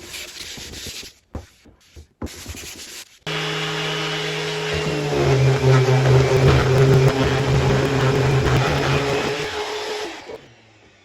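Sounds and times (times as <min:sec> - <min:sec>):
orbital sander humming: 0:03.3 - 0:10.4.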